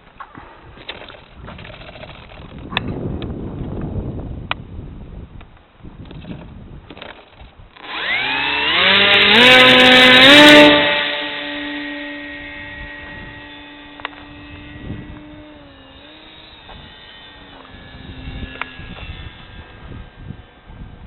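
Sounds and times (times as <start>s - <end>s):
model airplane motor whining: 0.8s - 2.8s, 6.1s - 21.0s.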